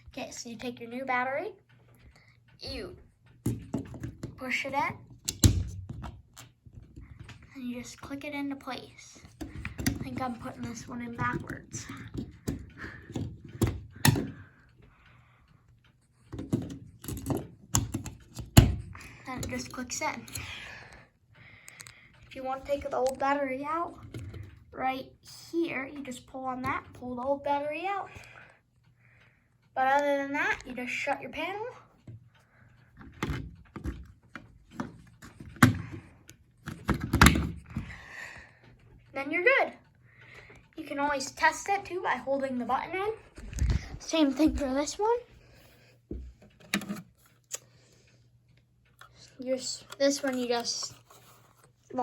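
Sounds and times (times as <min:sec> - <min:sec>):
plastic clicks and knocks: 0:03.3 - 0:07.4, 0:09.2 - 0:14.5, 0:16.2 - 0:19.7, 0:33.0 - 0:38.0, 0:46.1 - 0:47.6.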